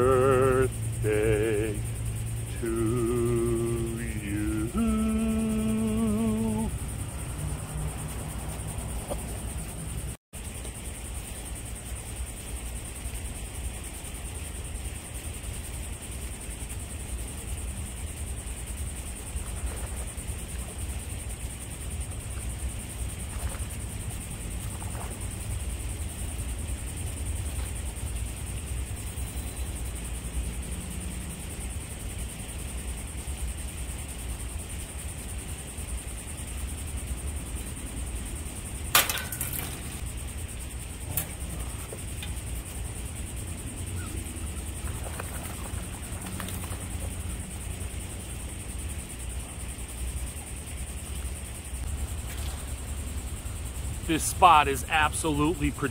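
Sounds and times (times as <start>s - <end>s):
constant high-pitched drone: 0.0s - 55.9s.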